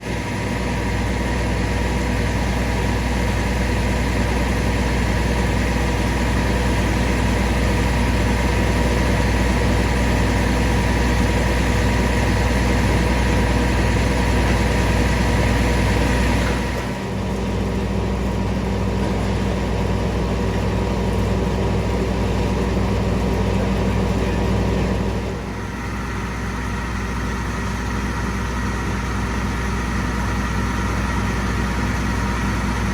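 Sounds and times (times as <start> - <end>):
fire engine idling: 0.0 - 32.9.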